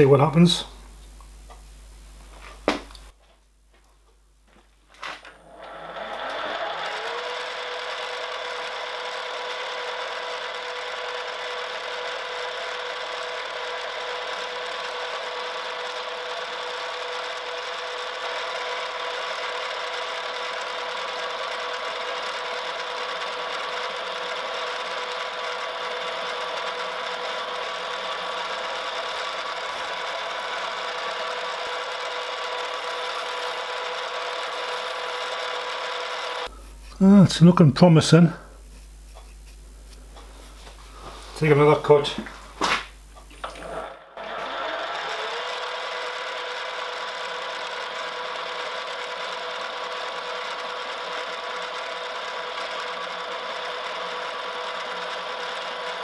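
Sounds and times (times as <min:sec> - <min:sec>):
end mill cutting metal: 0:05.3 - 0:36.5, 0:43.4 - 0:56.0
milling machine spindle whine: 0:05.3 - 0:37.0, 0:43.1 - 0:56.0.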